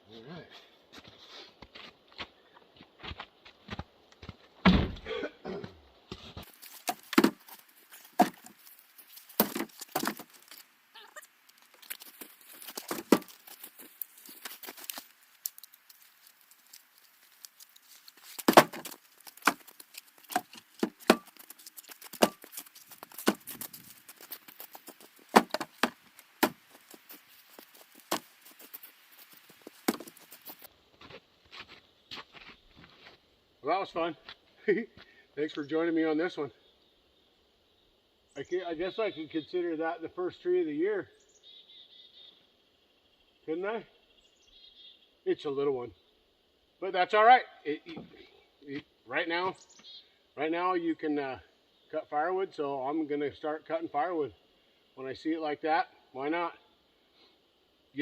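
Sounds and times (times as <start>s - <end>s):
crunching footsteps: 0.5s - 33.3s
rustling handling noise: 6.4s - 30.7s.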